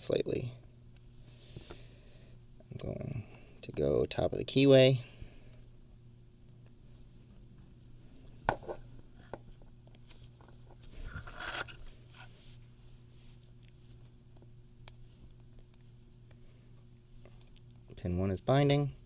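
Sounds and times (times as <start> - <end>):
steady low hum: 0.0 - 19.0
metallic scraping in a padlock: 11.0 - 12.3.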